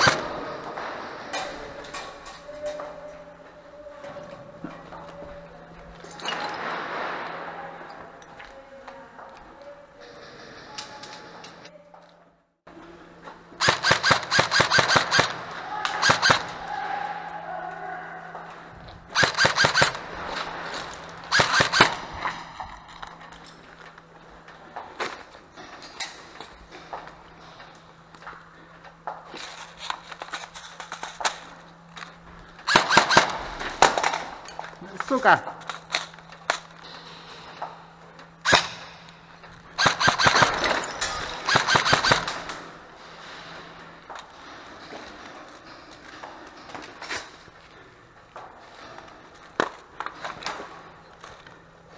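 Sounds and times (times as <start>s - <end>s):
airsoft gun shots echoing: 0.0s - 1.6s, 13.6s - 16.7s, 19.1s - 22.6s, 32.7s - 34.3s, 39.7s - 42.7s
airsoft guns firing: 0.0s - 3.5s, 5.6s - 8.5s, 13.5s - 17.4s, 18.3s - 23.2s, 29.0s - 37.6s, 38.2s - 44.2s.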